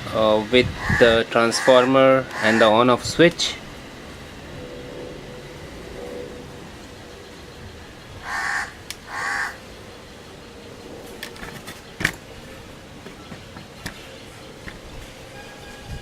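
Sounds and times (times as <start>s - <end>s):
crow cawing: 0.8s - 2.8s, 8.2s - 9.6s.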